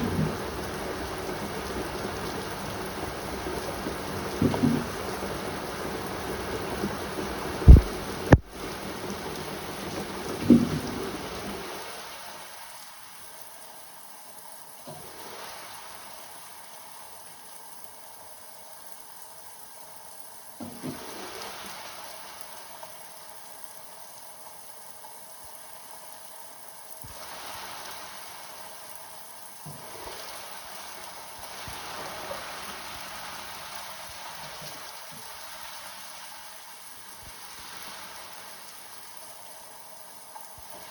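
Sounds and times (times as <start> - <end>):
rain falling steadily: 0.0 - 40.9
sharp thumps: 7.6 - 8.5.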